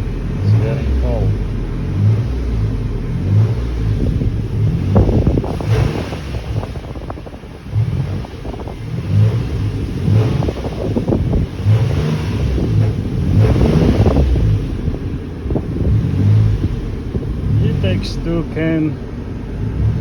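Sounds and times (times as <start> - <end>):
car engine running: 0.0 - 20.0
uneven low rumbles: 0.0 - 20.0.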